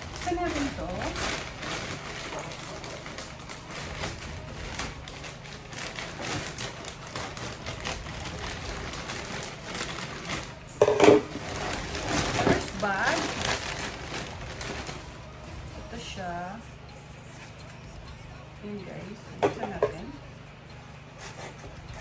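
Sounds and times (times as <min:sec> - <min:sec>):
shopping bag rustling: 0:00.0 - 0:16.2
packaging crinkles and taps: 0:00.1 - 0:15.0.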